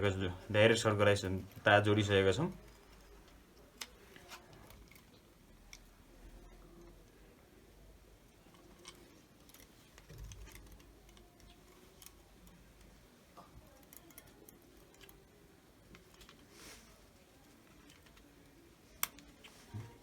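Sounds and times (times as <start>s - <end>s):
small plastic parts clicking: 2.4s - 6.9s, 8.4s - 16.5s.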